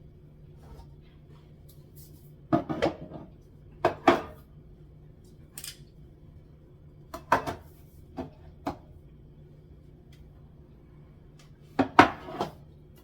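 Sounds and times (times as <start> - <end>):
cans and jars clunking on shelf: 2.5 - 4.4.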